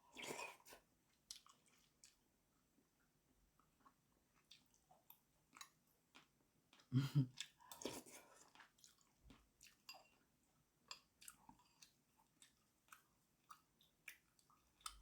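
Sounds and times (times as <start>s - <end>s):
person chewing: 3.8s - 10.2s, 10.9s - 15.0s.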